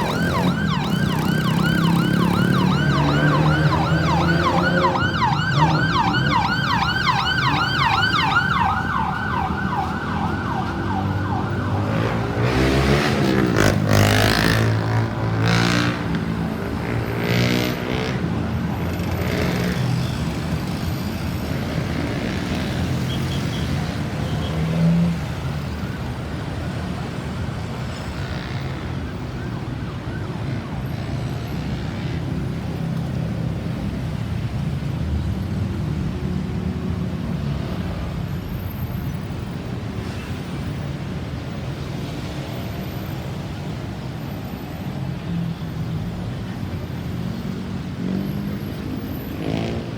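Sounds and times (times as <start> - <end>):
ambulance siren yelping: 0.0 - 13.2, 28.8 - 31.8
vehicle passing loudly: 0.0 - 20.0
traffic hum: 0.0 - 49.9.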